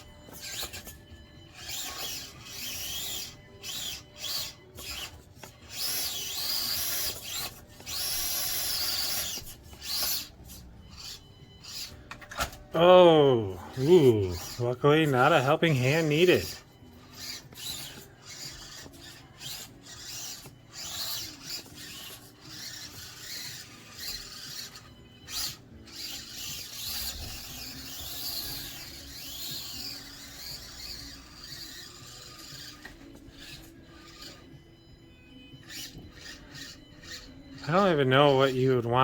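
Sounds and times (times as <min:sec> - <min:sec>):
toy car scraping and knocking: 0:00.0 - 0:12.7, 0:13.8 - 0:34.6, 0:35.6 - 0:38.8
small electric motor whine: 0:00.0 - 0:39.0.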